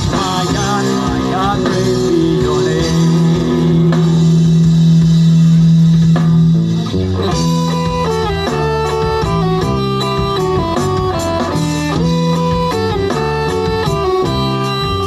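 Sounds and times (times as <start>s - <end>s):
bass guitar: 0.0s - 15.0s
drum kit: 0.0s - 15.0s
electric guitar lead line: 0.0s - 15.0s
rock band playing: 0.0s - 15.0s.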